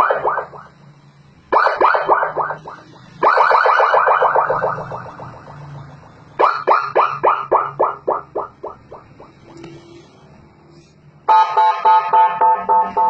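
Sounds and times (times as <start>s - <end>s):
electronic siren falling chirps: 0.0s - 0.8s, 1.6s - 5.8s.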